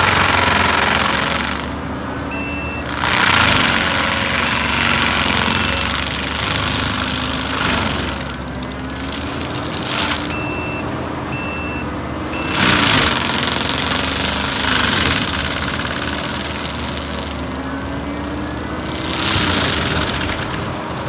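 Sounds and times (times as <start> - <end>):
diesel engine running hard: 0.0 - 21.0
mulcher shredding noise: 0.0 - 21.0
short beeps: 2.3 - 2.9, 10.2 - 12.8.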